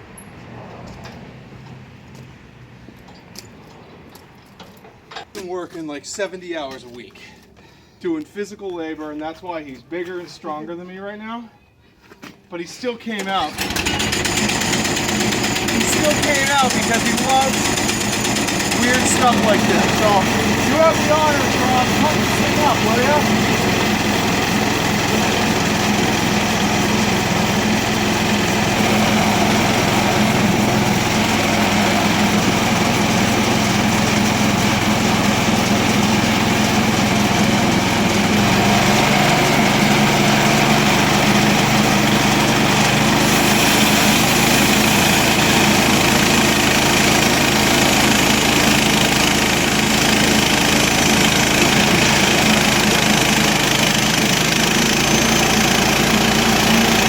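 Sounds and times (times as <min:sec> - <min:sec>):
small gasoline engine running: 0:13.5 - 0:57.0.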